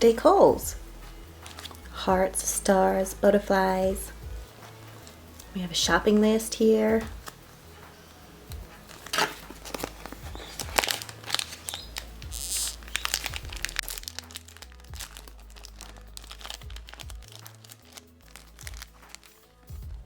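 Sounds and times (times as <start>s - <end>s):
quiet background music: 0.0s - 20.0s
packaging crinkling and rustling: 1.4s - 1.8s, 8.8s - 19.4s.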